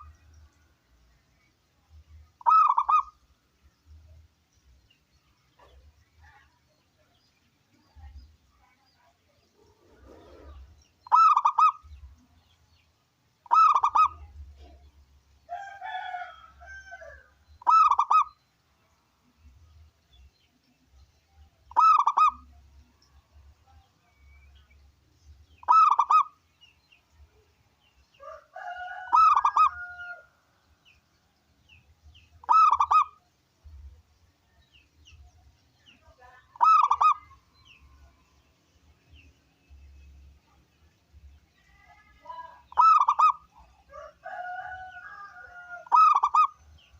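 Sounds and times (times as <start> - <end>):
dove cooing: 2.4 - 3.1, 9.8 - 11.9, 13.5 - 14.8, 17.6 - 18.3, 21.7 - 22.4, 25.6 - 26.3, 28.7 - 30.1, 32.4 - 33.2, 36.6 - 37.3, 42.7 - 43.5, 45.8 - 46.6
lower bird call: 13.4 - 14.8, 32.2 - 33.2.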